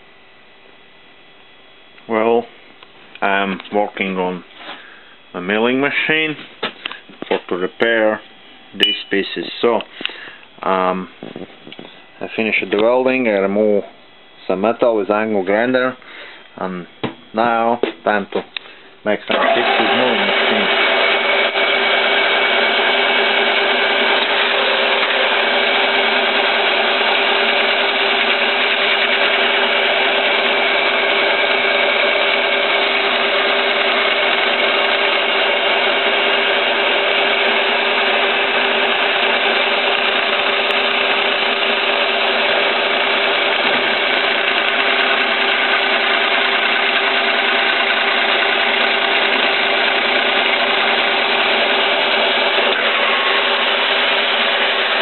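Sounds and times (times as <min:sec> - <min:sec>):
milling machine cutting metal: 0:19.3 - 0:55.0.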